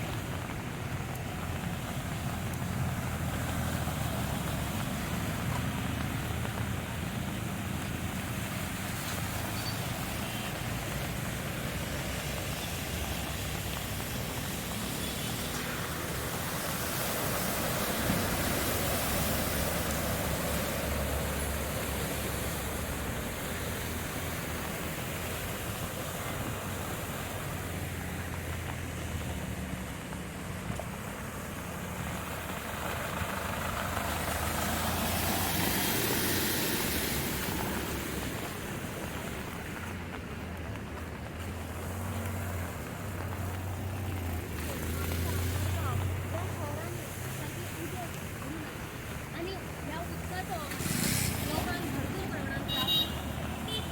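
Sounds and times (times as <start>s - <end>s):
vehicles passing: 0.0s - 53.9s.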